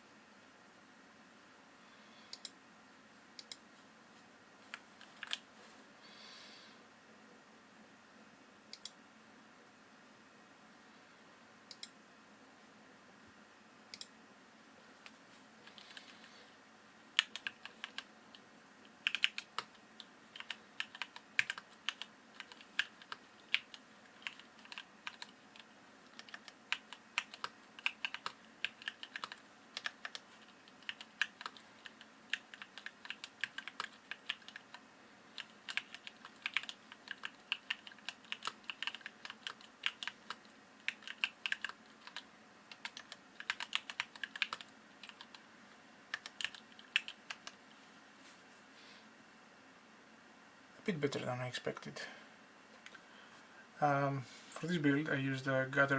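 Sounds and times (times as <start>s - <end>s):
mechanical keyboard typing: 4.7s - 5.4s, 17.2s - 18.1s, 19.0s - 45.4s, 46.1s - 47.6s.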